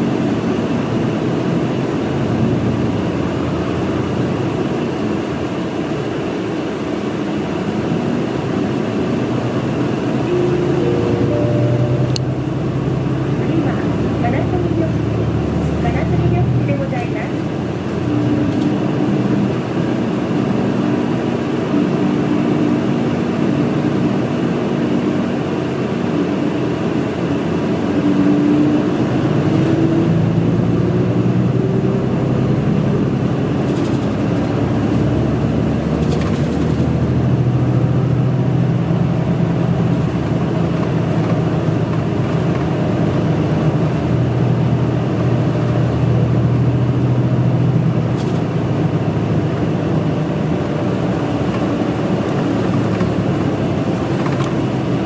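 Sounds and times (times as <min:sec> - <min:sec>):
bus engine running: 0:00.0 - 0:55.0
rising whine: 0:07.7 - 0:15.8.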